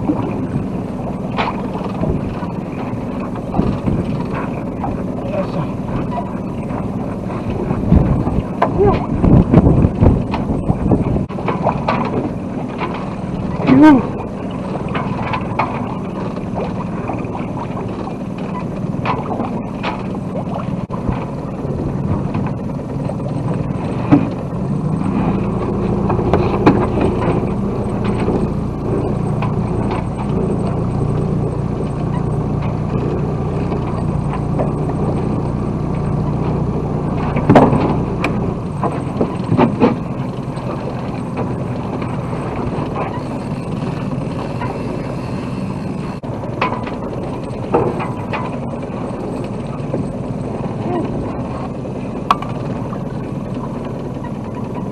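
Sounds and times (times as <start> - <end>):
boat engine humming: 0.0 - 54.9
water and hull noise: 0.0 - 54.9.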